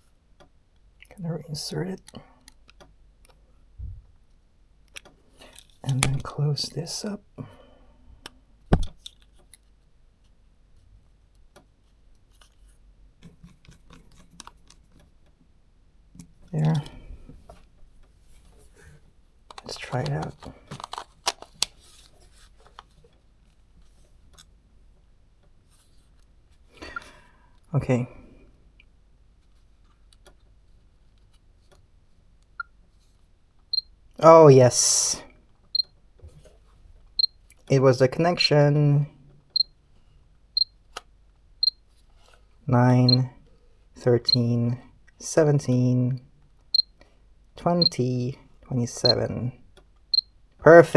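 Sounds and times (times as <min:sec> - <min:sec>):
small lens parts clicking: 0:08.8 - 0:09.7, 0:19.5 - 0:21.7.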